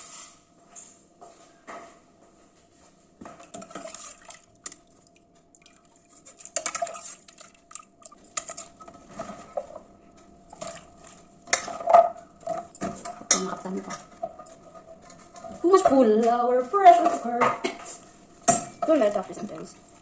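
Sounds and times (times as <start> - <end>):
metal pots and utensils clinking: 3.4 - 4.8, 6.1 - 16.2, 16.8 - 19.8.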